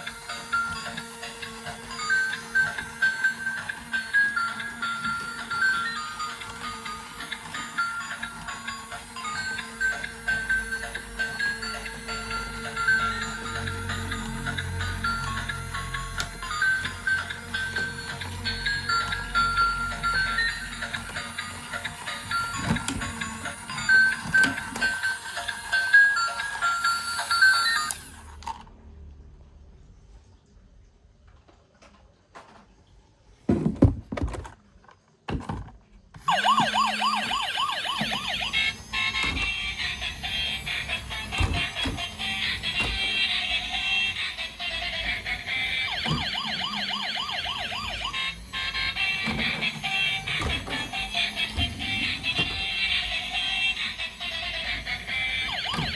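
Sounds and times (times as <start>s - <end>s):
toy electronic siren: 0.0s - 28.5s, 36.2s - 55.9s
plastic toys knocking: 33.5s - 34.7s, 35.3s - 35.8s
melody of short bright notes: 36.3s - 48.4s.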